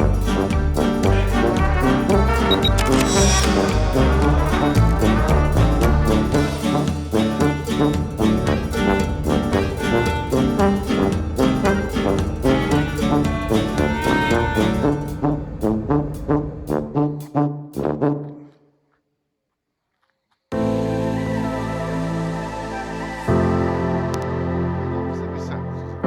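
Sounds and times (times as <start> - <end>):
music with brass and beat: 0.0 - 18.5.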